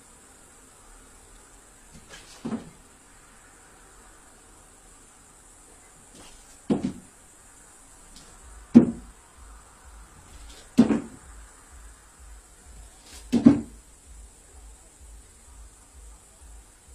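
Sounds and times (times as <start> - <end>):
dull knocks: 2.0 - 2.8, 6.2 - 7.1, 8.2 - 9.1, 10.2 - 11.3, 12.7 - 13.8.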